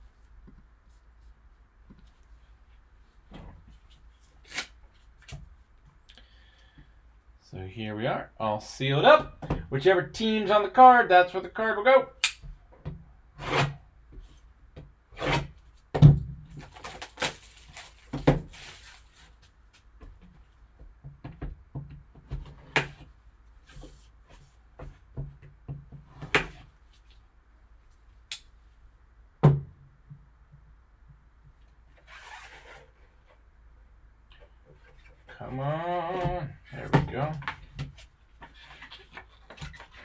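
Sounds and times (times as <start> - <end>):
cardboard thunks: 15.3 - 16.8, 18.1 - 18.6
packaging rustle: 16.6 - 19.5.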